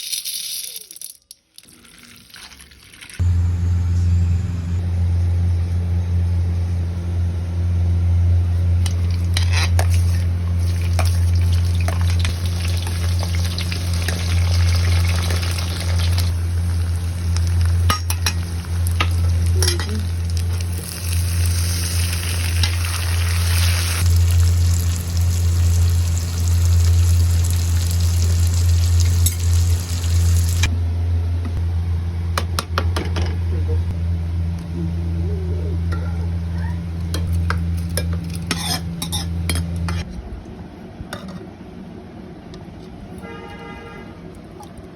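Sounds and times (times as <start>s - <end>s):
steady low hum: 3.2s - 43.1s
food sizzling in a pan: 9.6s - 30.7s.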